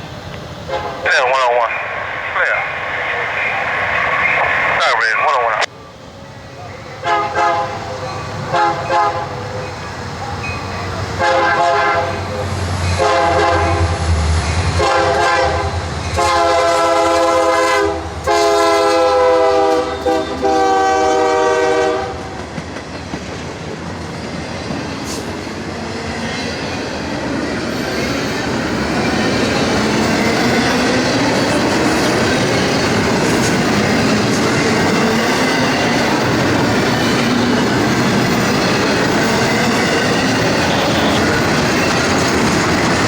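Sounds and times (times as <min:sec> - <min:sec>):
locomotive horn blasts: 0:00.7 - 0:01.1, 0:07.0 - 0:07.9, 0:08.5 - 0:09.4, 0:11.2 - 0:12.3, 0:13.0 - 0:14.0, 0:14.8 - 0:22.3, 0:40.7 - 0:41.4
train wheels clicking over rails: 0:22.2 - 0:43.0.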